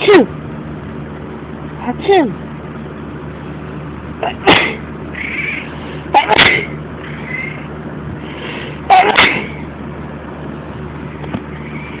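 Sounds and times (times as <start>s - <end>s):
person sneezing: 4.2s - 4.8s, 6.1s - 6.8s, 8.9s - 9.6s.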